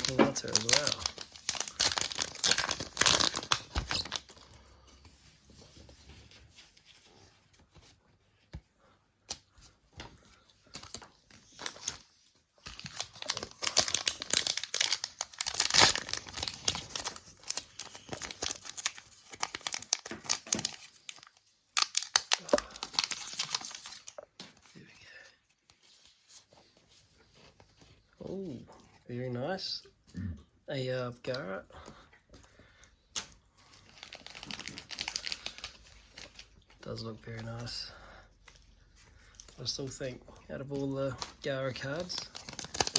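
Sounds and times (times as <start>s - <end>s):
foil wrappers tearing and crinkling: 0.0s - 4.4s, 10.8s - 24.2s, 33.7s - 36.6s, 41.2s - 42.9s
cards and packaging clicking: 0.0s - 4.5s, 12.6s - 24.6s, 40.8s - 42.9s.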